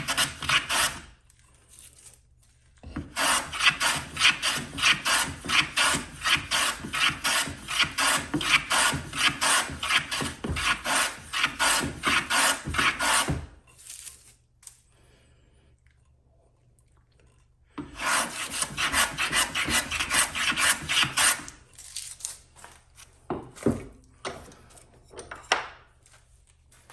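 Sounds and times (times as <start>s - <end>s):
hand tool strokes on wood: 17.8s - 21.5s.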